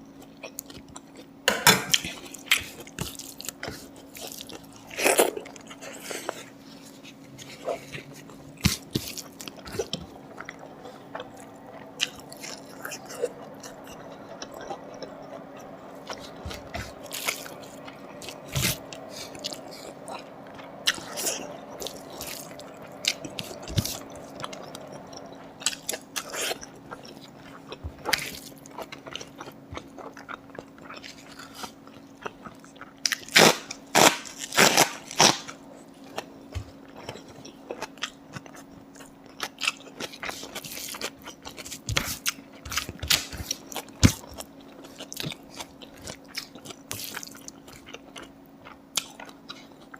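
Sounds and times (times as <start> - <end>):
faint steady hum: 0.0 - 49.9
person chewing and crunching: 0.1 - 49.9.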